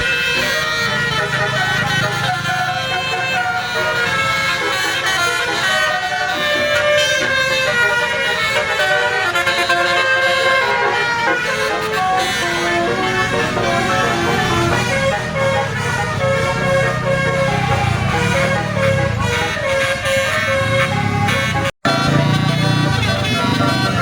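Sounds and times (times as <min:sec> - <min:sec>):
bus engine running: 0:00.0 - 0:24.0
multi-trumpet horn melody: 0:00.0 - 0:24.0.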